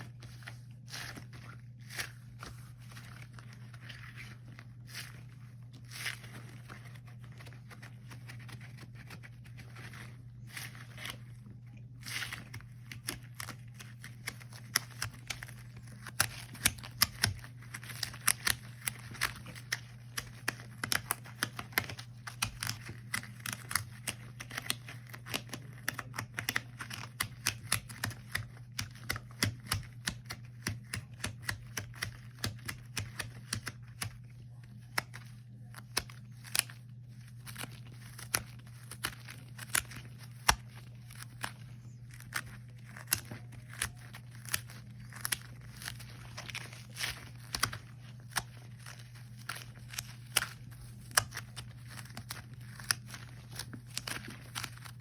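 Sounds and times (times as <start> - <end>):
sticky clicks and crackles: 12.0 - 55.0.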